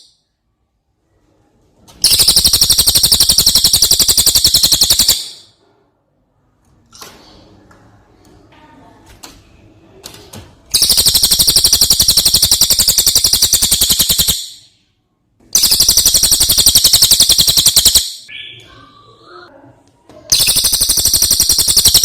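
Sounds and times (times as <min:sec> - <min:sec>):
bird rattling trills: 0:02.0 - 0:05.4, 0:10.8 - 0:14.6, 0:15.6 - 0:18.2, 0:20.3 - 0:22.0
faint bird chirps: 0:15.6 - 0:19.5.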